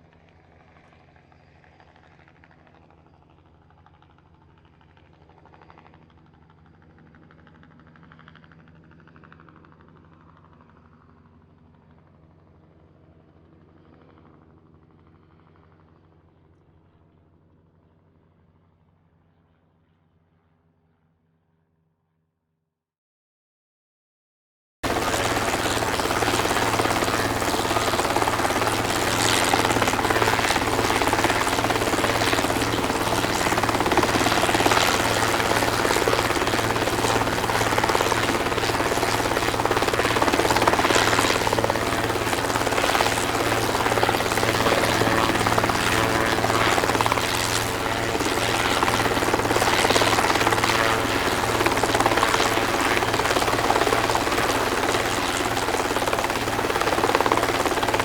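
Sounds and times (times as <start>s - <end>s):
helicopter rotor chop: 24.8s - 58.0s.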